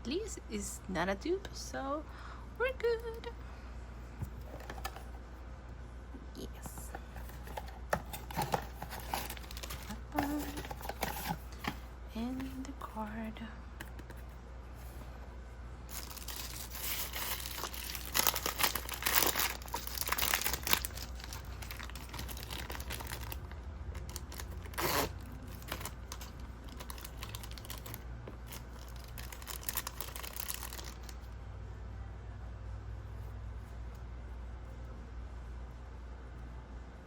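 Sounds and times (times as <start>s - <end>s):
plastic packaging crinkling: 7.2s - 11.8s, 15.9s - 31.2s
plastic packaging tearing: 7.5s - 11.5s, 15.9s - 31.2s.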